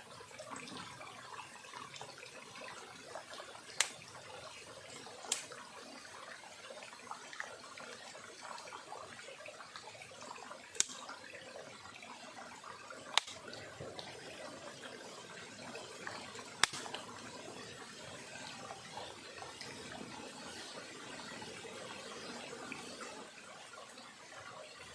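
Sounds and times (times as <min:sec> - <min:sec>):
stream trickling: 0:00.0 - 0:24.9
sharp pops: 0:05.3 - 0:05.5, 0:13.2 - 0:13.4, 0:16.6 - 0:17.0.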